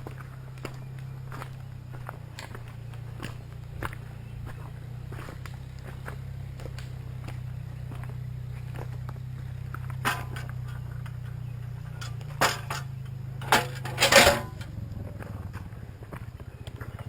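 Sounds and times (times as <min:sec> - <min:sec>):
steady low hum: 0:00.0 - 0:17.0
hard objects clinking together: 0:11.9 - 0:14.7.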